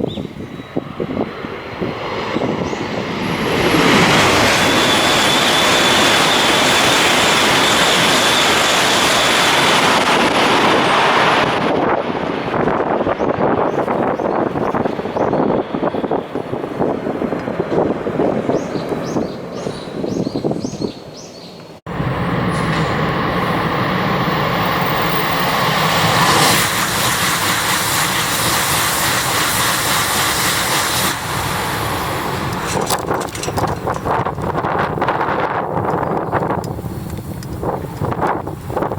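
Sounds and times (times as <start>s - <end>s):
high-speed train rushing past: 0.0s - 38.9s
wind on microphone: 0.0s - 38.9s.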